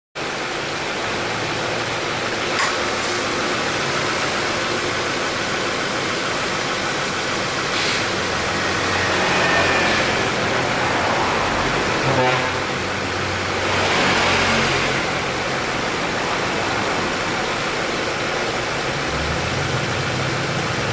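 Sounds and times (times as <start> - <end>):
steady whooshing noise: 2.9 - 18.7.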